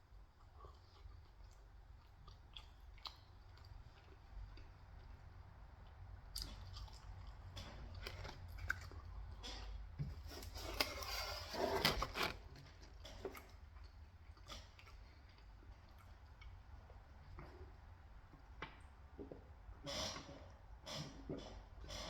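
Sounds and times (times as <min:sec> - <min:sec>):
person chewing pizza: 0:00.0 - 0:18.5.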